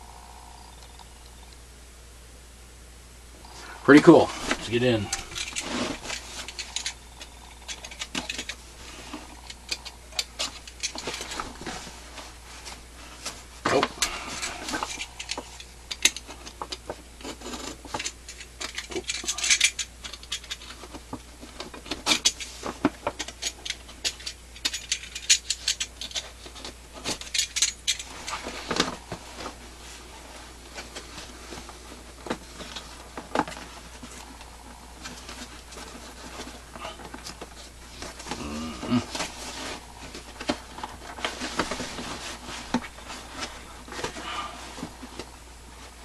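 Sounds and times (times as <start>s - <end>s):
hands handling cardboard box: 28.0s - 46.0s.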